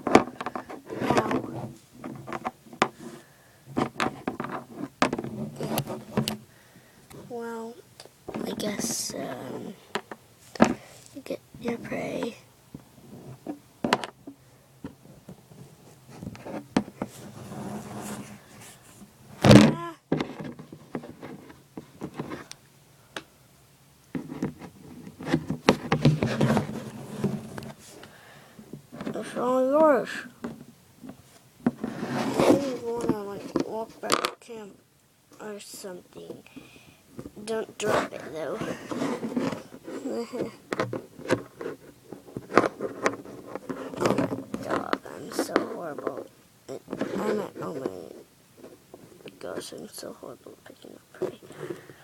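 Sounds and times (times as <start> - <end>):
rustling: 0.0 - 7.4, 8.0 - 22.7, 24.0 - 34.4, 35.3 - 52.0
plastic figurines clicking and rustling: 37.7 - 49.8.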